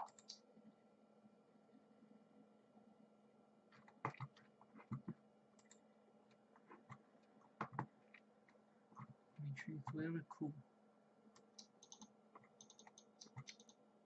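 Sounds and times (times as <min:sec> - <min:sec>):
computer mouse and keyboard clicks: 0:00.0 - 0:00.4, 0:03.7 - 0:05.8, 0:06.6 - 0:08.2, 0:11.4 - 0:13.8
faint steady hum: 0:00.0 - 0:14.0.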